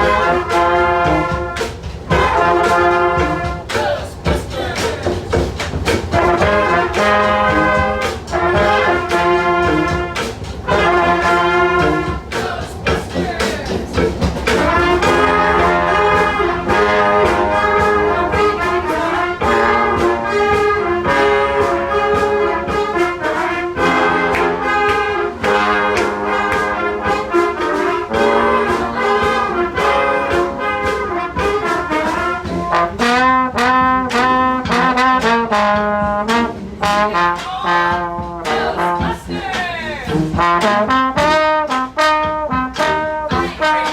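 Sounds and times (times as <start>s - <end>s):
brass band playing lively tune: 0.0s - 43.9s.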